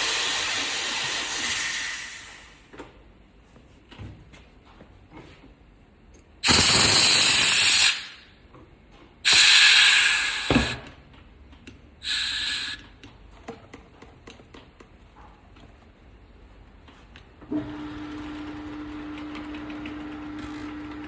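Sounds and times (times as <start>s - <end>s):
compressed air hissing: 0.0s - 2.6s, 6.4s - 8.2s, 9.3s - 10.8s, 12.0s - 12.8s.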